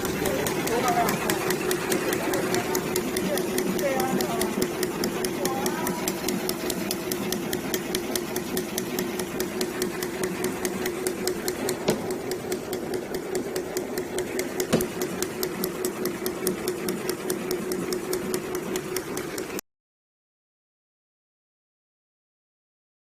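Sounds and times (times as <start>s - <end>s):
packaging machine humming: 0.0s - 19.6s
rapid mechanical clicking: 0.0s - 19.6s
loud machine knocks: 11.5s - 12.3s, 14.4s - 15.4s.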